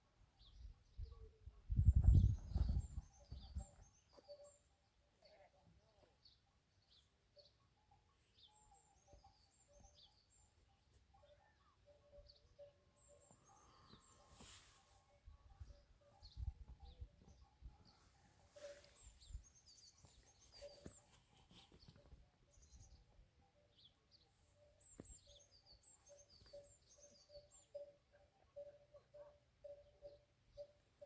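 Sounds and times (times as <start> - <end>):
small birds chirping: 15.7 - 28.0.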